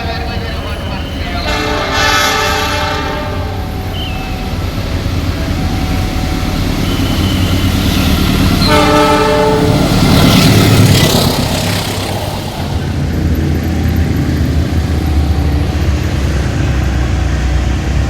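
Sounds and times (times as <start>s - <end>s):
diesel locomotive engine rumbling: 0.0s - 18.0s
train horn blast: 1.4s - 4.3s, 8.6s - 10.2s.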